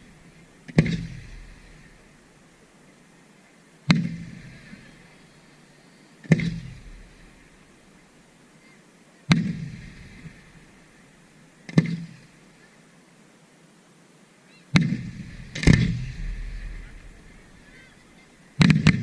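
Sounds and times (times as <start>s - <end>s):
rumble after bangs: 0.0s - 2.3s, 6.3s - 7.9s, 14.8s - 19.0s
firework shells bursting: 14.8s - 18.0s.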